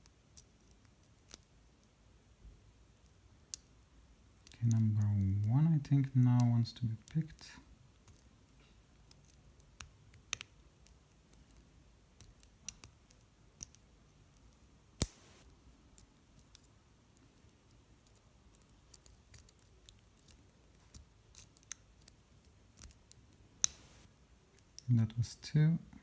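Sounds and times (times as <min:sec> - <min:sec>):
lock pick ticking against pins: 0:04.4 - 0:07.4.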